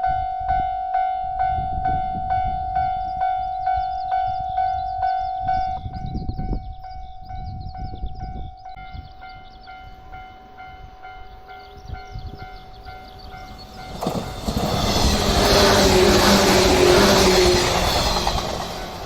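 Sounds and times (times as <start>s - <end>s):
train passing over crossing: 0.0s - 19.0s
level crossing warning bell: 8.7s - 14.7s.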